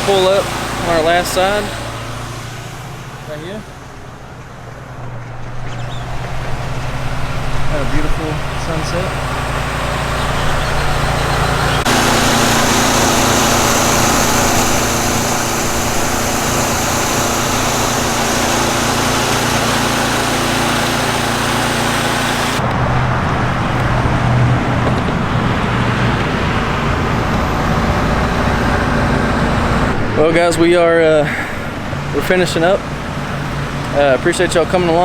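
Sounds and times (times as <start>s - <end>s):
spray hissing: 0.0s - 3.9s, 10.4s - 22.6s
pressure washer engine: 0.0s - 35.0s.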